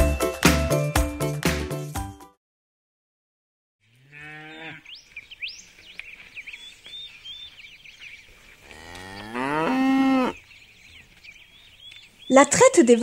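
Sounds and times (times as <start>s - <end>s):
cow mooing: 3.9s - 4.9s, 8.6s - 10.4s.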